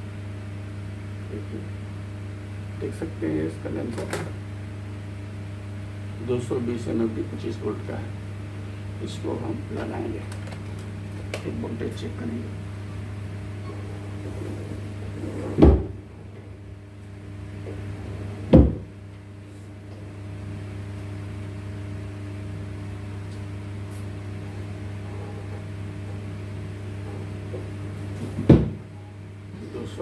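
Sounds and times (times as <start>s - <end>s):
low electrical hum: 0.0s - 30.0s
sharp knocks: 18.5s - 18.9s, 28.4s - 28.8s.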